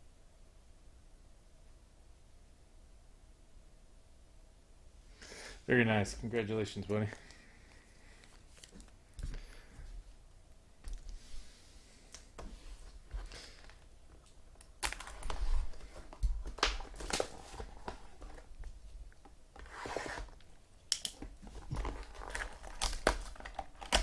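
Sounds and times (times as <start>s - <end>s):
wrappers tearing and crinkling: 14.6s - 18.5s, 19.6s - 24.0s.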